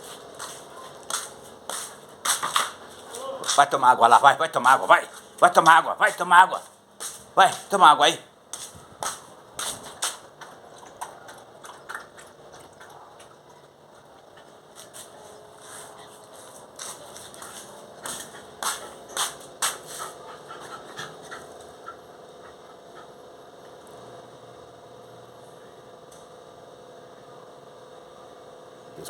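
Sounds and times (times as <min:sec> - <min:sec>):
faint motor hum: 0:00.0 - 0:29.0
dog lapping water: 0:09.8 - 0:14.8.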